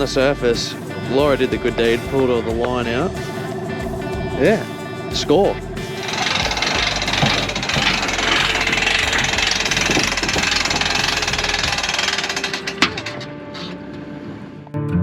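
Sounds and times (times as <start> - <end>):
outboard motor running: 0.3 - 13.3.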